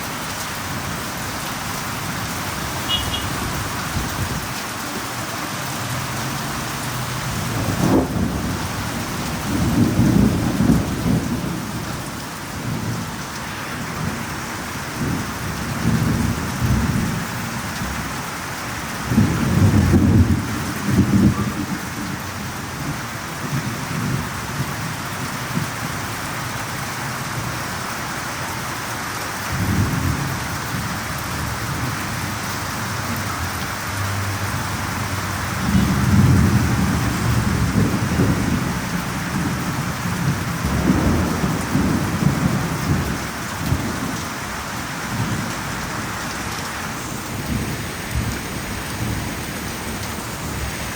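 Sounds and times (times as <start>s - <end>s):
thunder rumbling: 0.0s - 18.0s, 19.0s - 26.0s, 34.5s - 50.9s
rain hissing: 0.0s - 50.9s
sharp thunder crack: 7.6s - 8.7s.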